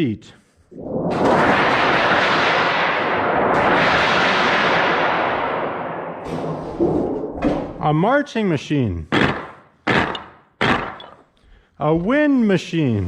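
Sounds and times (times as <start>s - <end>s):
thunder sheet crashing: 0.8s - 7.8s.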